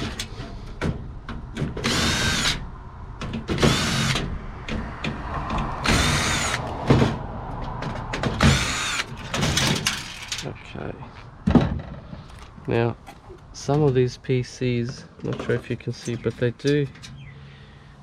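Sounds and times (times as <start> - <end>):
power drill motor whining: 1.8 - 2.6, 3.6 - 4.2, 5.8 - 6.7, 8.4 - 9.2.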